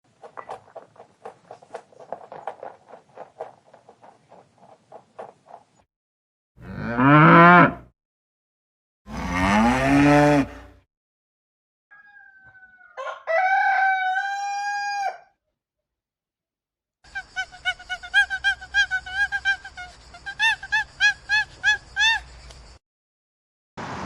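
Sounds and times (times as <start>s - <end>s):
cow mooing: 6.6s - 7.9s, 9.1s - 10.8s.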